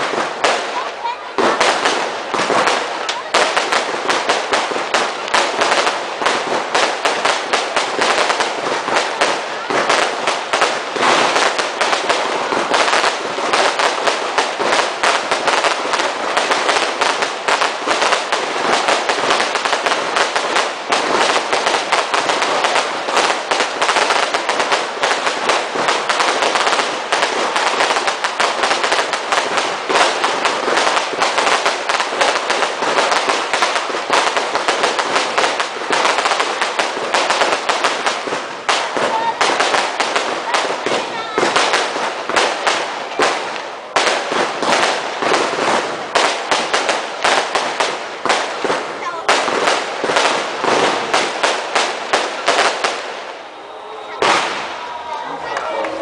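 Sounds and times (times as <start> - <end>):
fireworks banging and crackling: 0.0 - 56.0.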